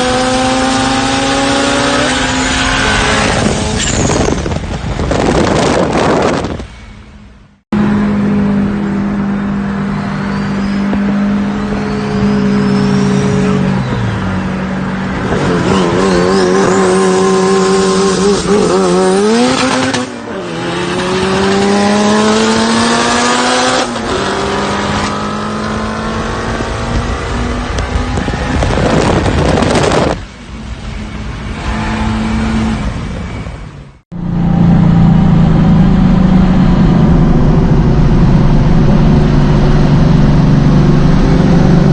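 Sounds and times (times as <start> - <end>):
car engines revving: 0.0 - 6.9, 7.7 - 41.9.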